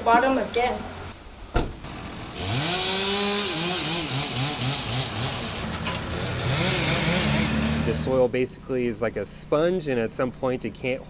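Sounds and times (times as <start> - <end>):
chainsaw revving and cutting: 1.8 - 8.2.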